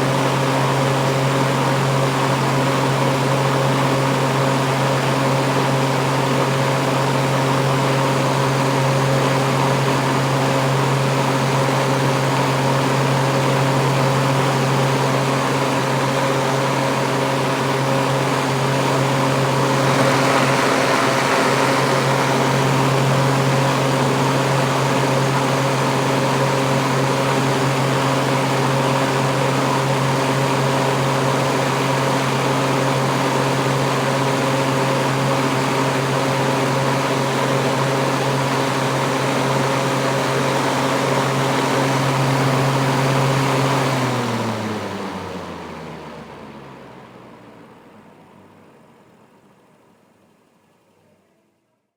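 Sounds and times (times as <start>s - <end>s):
exhaust fan motor hum: 6.5s - 36.9s
whining fan tones: 17.8s - 27.8s
rushing air: 19.4s - 25.0s.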